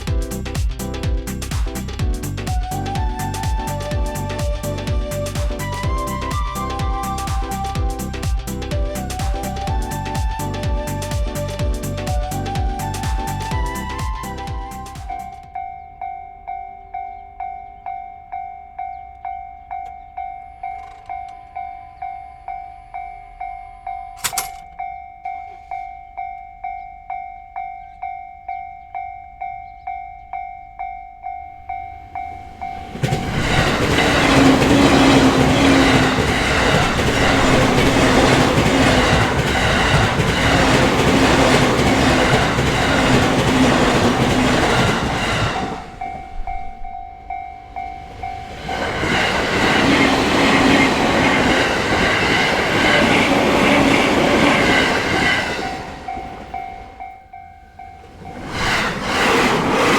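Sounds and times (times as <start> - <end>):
level crossing warning bell: 15.0 - 59.0
train wheels clacking on rail joints: 32.0 - 47.0.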